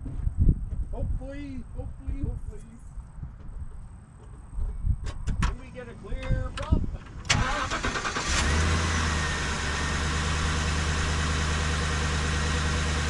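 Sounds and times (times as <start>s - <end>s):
van engine starting and idling: 7.0s - 13.0s.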